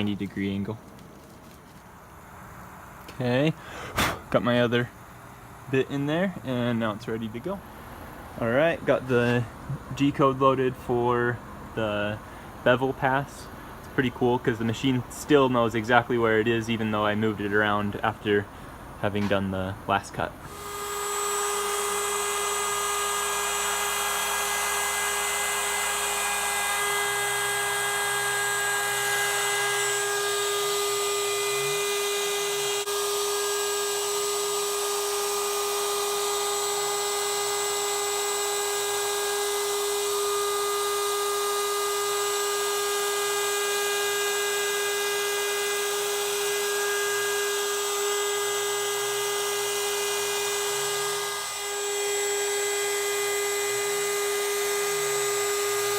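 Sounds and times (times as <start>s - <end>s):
router spindle high whine: 20.5s - 55.9s.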